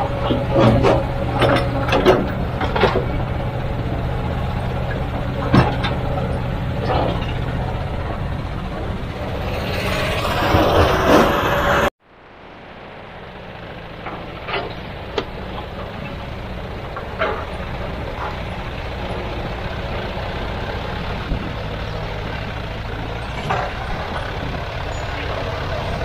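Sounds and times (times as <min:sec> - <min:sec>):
diesel engine running: 0:00.0 - 0:26.0
loud rumble: 0:00.0 - 0:26.0
metallic knocks and clanks: 0:00.2 - 0:03.5.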